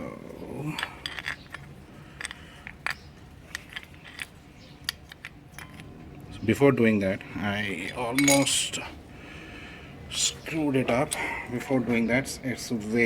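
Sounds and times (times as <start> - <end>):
light metallic clicks and clinks: 0.7 - 6.0, 7.8 - 8.6.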